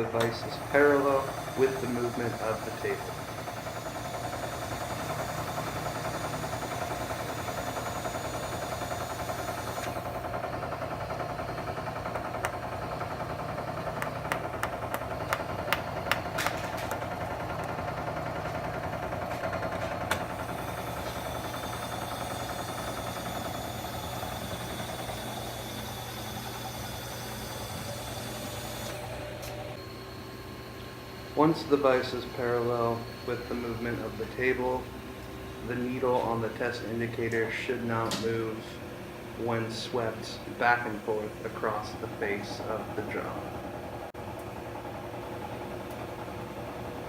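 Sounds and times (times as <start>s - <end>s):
machine hum: 0.0s - 47.0s.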